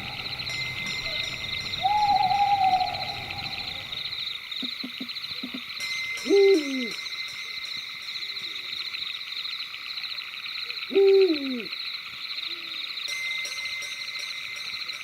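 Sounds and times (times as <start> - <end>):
owl hooting: 0.0 - 4.2, 6.3 - 7.0, 10.9 - 11.7
high pulsing night chorus: 0.0 - 5.6, 10.9 - 11.7.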